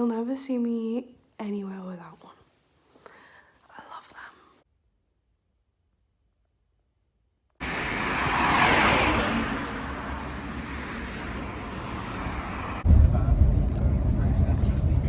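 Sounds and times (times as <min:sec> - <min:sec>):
hiss of passing vehicle: 0:07.6 - 0:12.9
traffic noise: 0:07.6 - 0:15.0.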